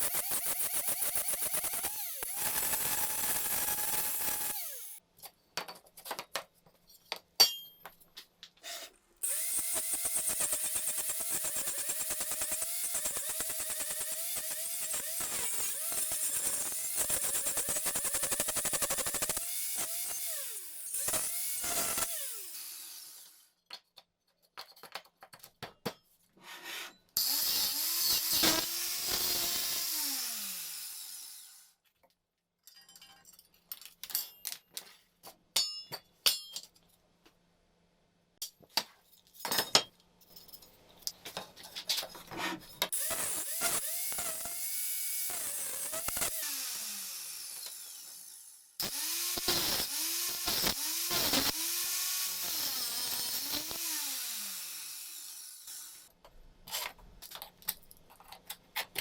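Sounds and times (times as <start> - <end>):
power tool running and winding down: 0.0 - 5.0, 9.2 - 23.4, 27.2 - 31.7, 42.9 - 56.1
metal tools clinking: 32.6 - 34.6.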